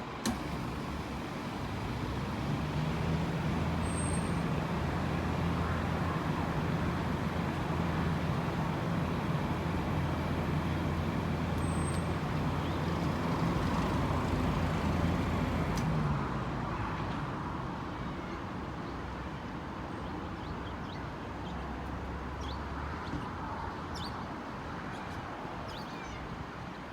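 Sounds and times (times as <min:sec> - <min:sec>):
diesel engine running: 0:00.0 - 0:16.6.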